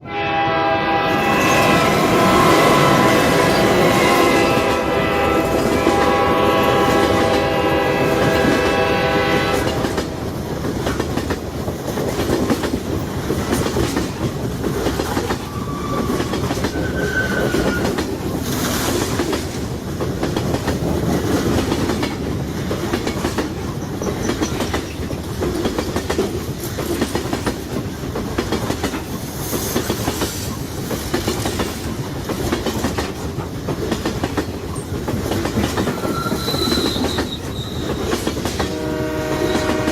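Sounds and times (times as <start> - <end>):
train air horn: 0.0 - 10.3, 36.0 - 39.9
train cars rolling past: 0.4 - 39.9.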